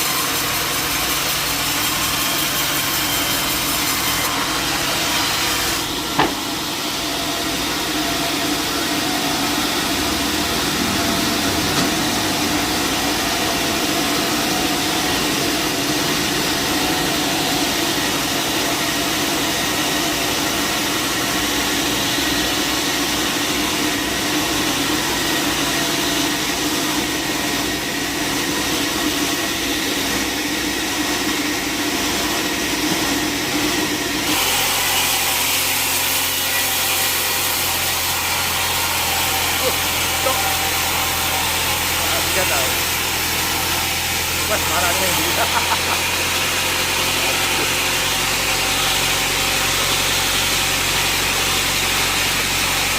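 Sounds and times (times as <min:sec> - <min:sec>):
band sawmill machine drone: 0:00.0 - 0:52.9
sharp knock: 0:06.1 - 0:06.5.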